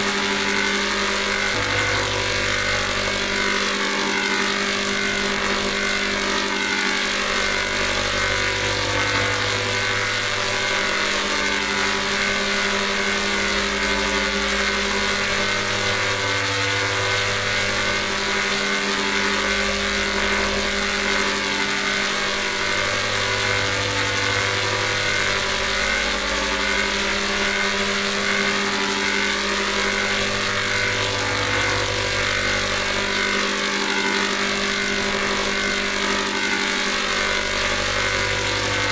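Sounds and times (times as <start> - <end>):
buzzy synthesized chord drone: 0.0 - 38.9
low synth bass note: 1.1 - 4.1.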